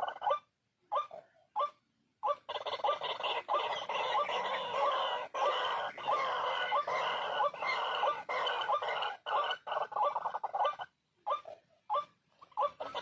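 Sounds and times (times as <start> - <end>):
bird croaking calls: 0.0 - 13.0.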